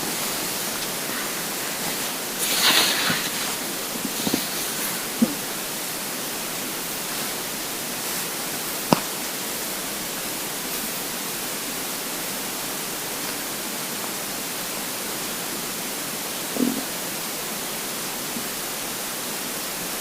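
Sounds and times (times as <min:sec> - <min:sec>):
recording hiss: 0:00.0 - 0:20.0
stomach gurgle: 0:00.2 - 0:05.8, 0:16.5 - 0:17.0
sharp pop: 0:08.9 - 0:09.2.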